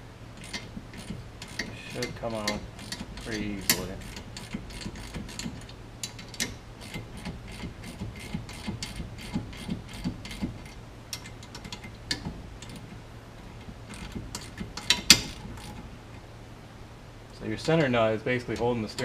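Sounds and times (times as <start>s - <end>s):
hand ratchet clicking: 0.4s - 12.8s, 13.9s - 15.8s.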